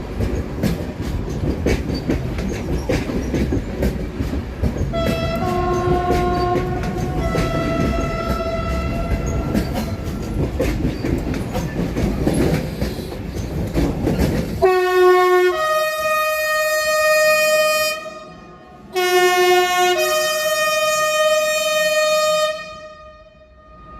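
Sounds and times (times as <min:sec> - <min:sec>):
train wheels rumbling on track: 0:00.0 - 0:23.9
two-tone train horn: 0:04.9 - 0:10.3, 0:14.6 - 0:23.9.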